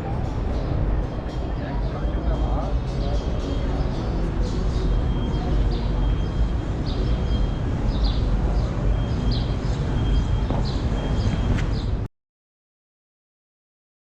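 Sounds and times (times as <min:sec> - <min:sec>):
small birds chirping: 0:01.8 - 0:12.0.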